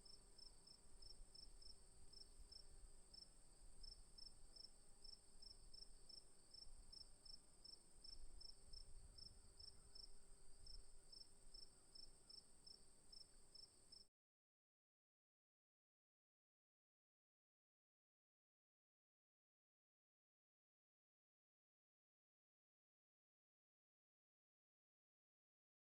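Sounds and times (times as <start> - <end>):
crickets chirping: 0.0 - 14.0.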